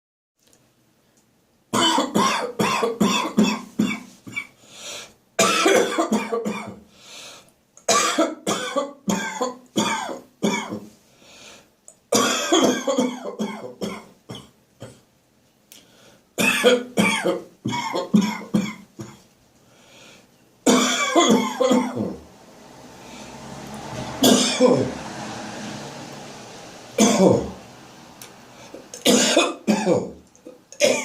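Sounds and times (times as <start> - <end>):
chesty coughing: 1.8 - 4.5, 5.4 - 6.8, 12.2 - 15.0, 16.4 - 19.2, 20.7 - 22.2, 29.0 - 30.2, 30.8 - 31.0
drawn breaths: 4.6 - 5.2, 6.9 - 7.6, 11.1 - 11.7, 19.6 - 20.4, 23.0 - 23.5.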